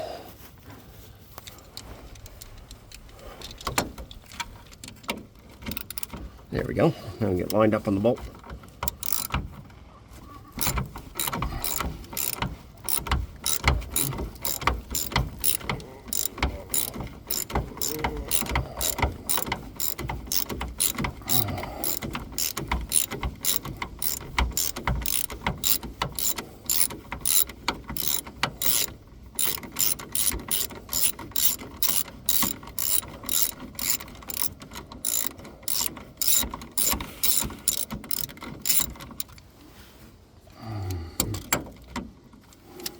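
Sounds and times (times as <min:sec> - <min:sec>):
ratchet wrench clicking: 0:05.6 - 0:06.2, 0:08.8 - 0:09.4, 0:10.6 - 0:39.4.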